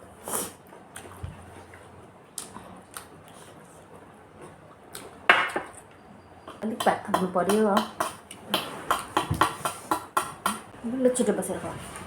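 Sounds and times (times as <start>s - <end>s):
chewing and handling food: 0.6s - 5.9s.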